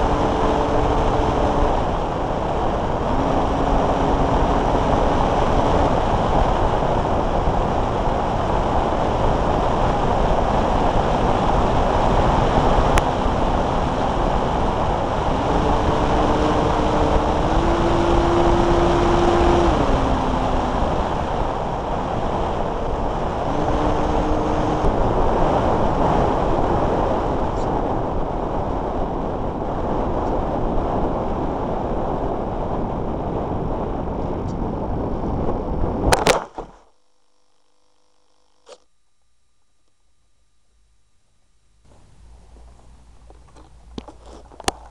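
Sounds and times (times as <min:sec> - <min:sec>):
short steady tones: 0:00.0 - 0:06.4, 0:22.4 - 0:25.3.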